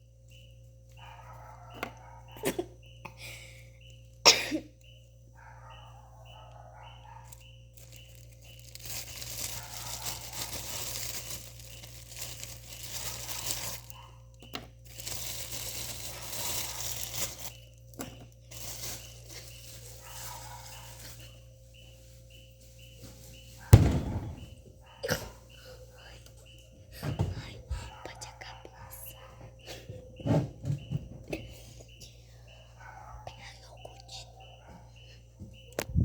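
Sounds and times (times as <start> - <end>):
plastic packaging crinkling and tearing: 7.3 - 14.1, 14.8 - 21.2
sharp knock: 23.8 - 24.5.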